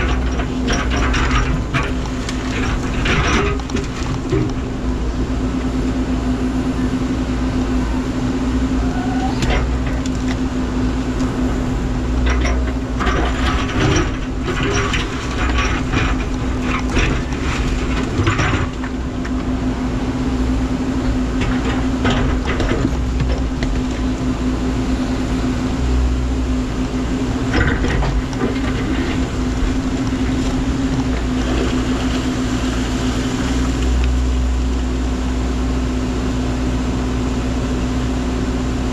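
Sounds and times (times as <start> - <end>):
metal clanks and scrapes: 0.0 - 4.6, 12.2 - 19.0, 27.2 - 31.9
excavator engine and hydraulics humming: 0.0 - 38.9.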